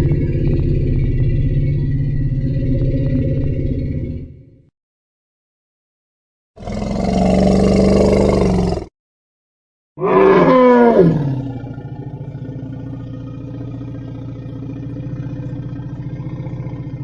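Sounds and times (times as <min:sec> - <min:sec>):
low steady rumble: 0:00.0 - 0:04.7, 0:11.6 - 0:17.0
deep dinosaur roar: 0:06.6 - 0:08.9, 0:10.0 - 0:17.0.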